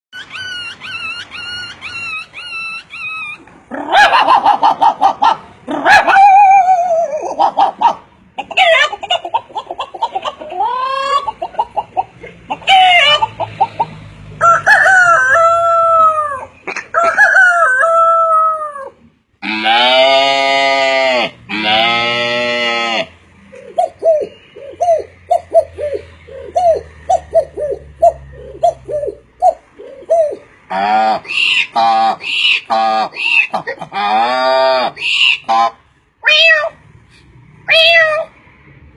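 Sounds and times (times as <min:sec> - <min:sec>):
man imitating chickens: 0:03.7 - 0:11.8, 0:12.5 - 0:13.4, 0:23.7 - 0:36.8
man imitating rooster crows: 0:14.4 - 0:23.0.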